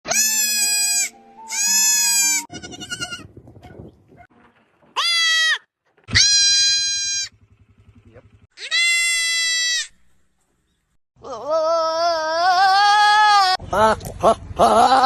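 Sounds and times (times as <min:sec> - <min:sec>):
goats bleating: 0:00.1 - 0:03.3, 0:05.0 - 0:07.3, 0:08.6 - 0:10.0.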